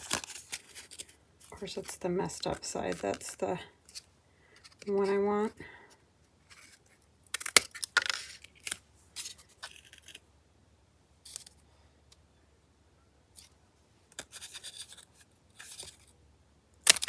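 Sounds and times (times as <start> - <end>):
scissors cutting paper: 0.0 - 4.0.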